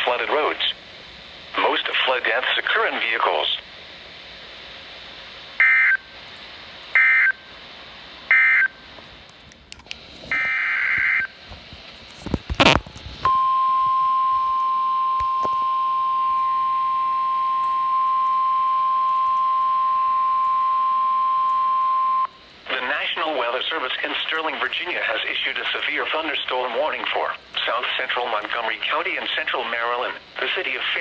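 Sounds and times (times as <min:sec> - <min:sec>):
steady single-pitch alarm tone: 0:05.6 - 0:06.1, 0:06.9 - 0:07.5, 0:08.3 - 0:08.8, 0:10.3 - 0:11.4, 0:13.3 - 0:22.4.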